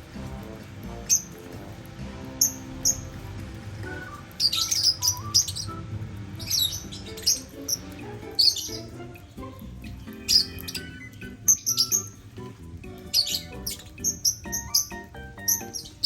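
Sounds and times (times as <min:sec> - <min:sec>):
background music: 0:00.0 - 0:16.0
lovebirds chirping: 0:00.0 - 0:16.0.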